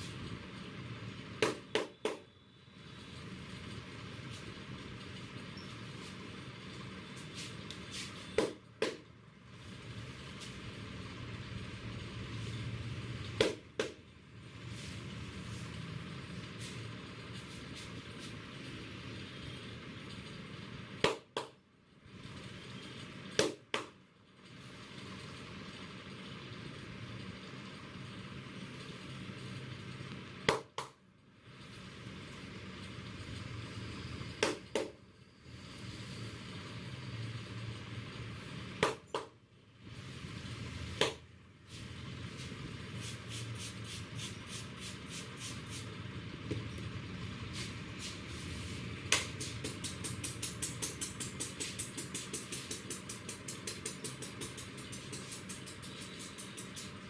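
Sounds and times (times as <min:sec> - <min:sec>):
sharp snap: 0:49.1 - 0:54.6.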